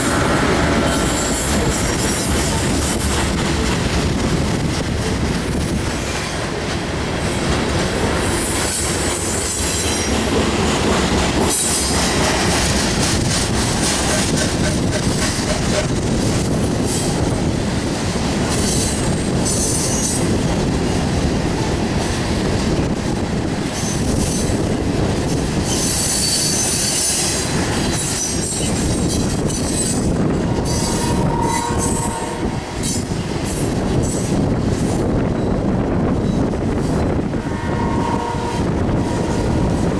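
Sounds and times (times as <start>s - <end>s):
train wheels rumbling on rail: 0.0s - 39.9s
wheel squeal: 25.7s - 27.3s, 28.0s - 34.3s.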